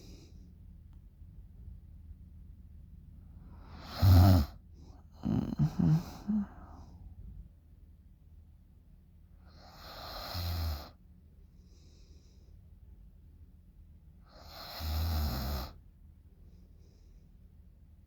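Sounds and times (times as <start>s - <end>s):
soft breath: 3.3s - 7.3s
woman snoring: 3.6s - 4.6s, 5.2s - 6.9s, 14.4s - 15.7s.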